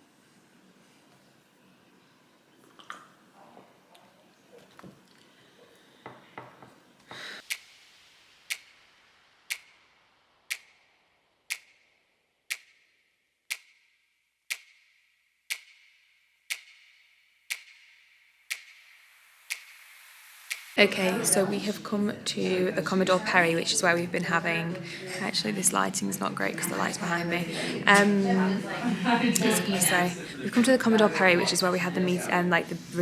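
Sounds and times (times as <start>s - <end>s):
clock ticking: 7.5s - 7.7s, 8.5s - 8.8s, 9.5s - 9.8s, 10.5s - 10.8s, 11.5s - 11.8s, 12.5s - 12.9s, 13.5s - 13.9s, 14.5s - 19.8s.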